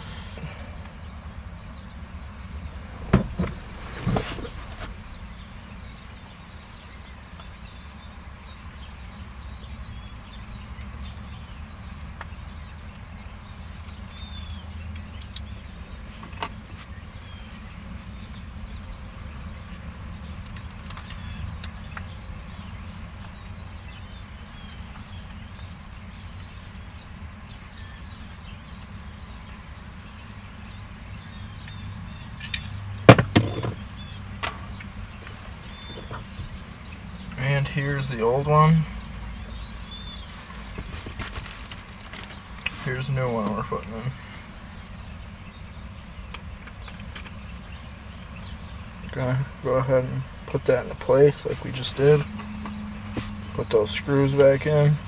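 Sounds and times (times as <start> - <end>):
steady low rumble: 0.0 - 55.0
sharp knocks: 3.0 - 4.9, 33.1 - 33.8.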